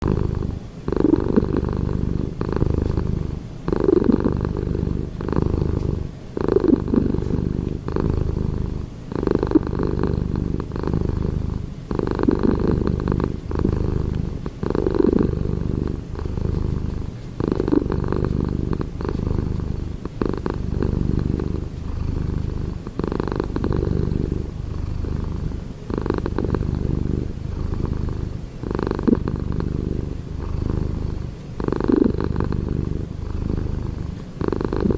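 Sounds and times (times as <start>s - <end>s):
cat rumbling breaths: 0.0s - 34.9s.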